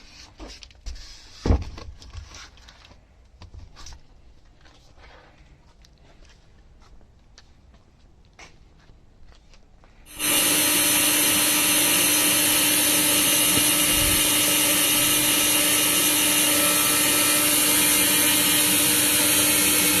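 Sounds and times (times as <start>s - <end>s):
electric motor running with hiss: 10.1s - 20.0s.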